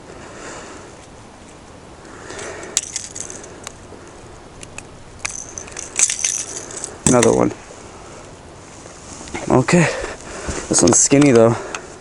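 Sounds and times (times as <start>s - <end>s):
soft rustle: 0.2s - 12.0s
metallic clicks of fishing tackle: 2.2s - 3.8s, 4.6s - 7.4s.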